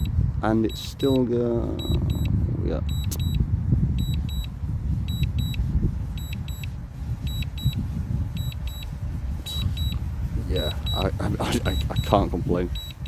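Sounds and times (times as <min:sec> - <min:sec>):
wind rumble on microphone: 0:00.0 - 0:13.0
high double warning beeps: 0:00.7 - 0:03.4, 0:04.0 - 0:04.5, 0:05.1 - 0:05.6, 0:06.2 - 0:06.7, 0:07.3 - 0:07.8, 0:08.4 - 0:13.0.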